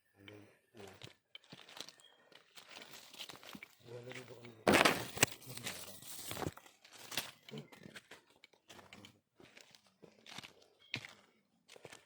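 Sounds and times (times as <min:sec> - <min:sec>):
footsteps crunching through leaves: 0:04.7 - 0:07.2.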